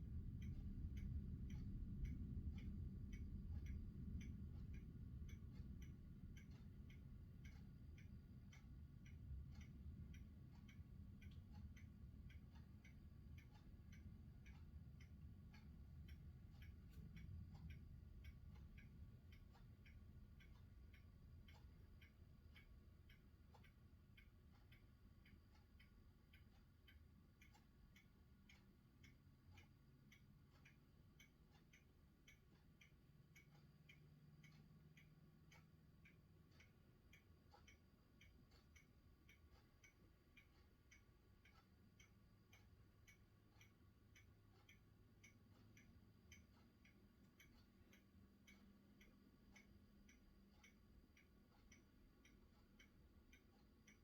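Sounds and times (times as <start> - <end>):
low rumble: 0.0 - 21.0
faint regular ticking: 0.0 - 54.0.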